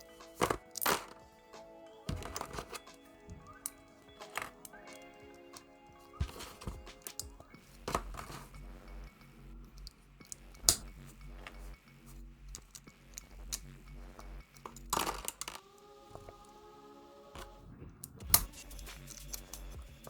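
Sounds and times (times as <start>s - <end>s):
plastic bricks clattering: 0.0s - 1.4s, 2.1s - 8.6s, 14.6s - 16.4s
soft background music: 0.0s - 20.0s.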